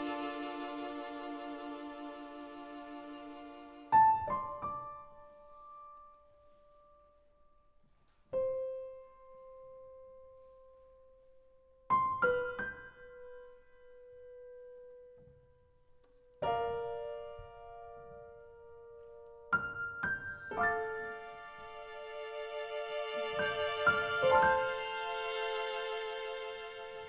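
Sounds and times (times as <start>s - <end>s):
slow sparse piano notes: 8.3s - 22.1s.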